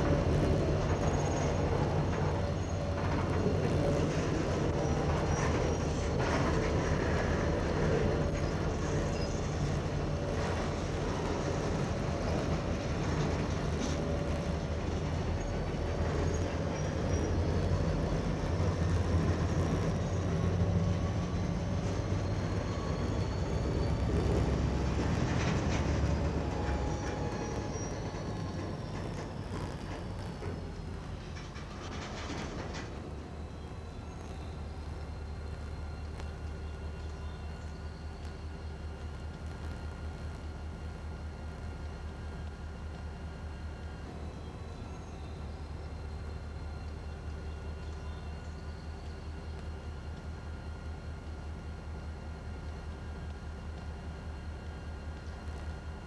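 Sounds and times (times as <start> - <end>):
train cars clanking: 0.0 - 35.2
freight train rumbling: 0.0 - 56.0
faint high squeal: 15.2 - 38.2.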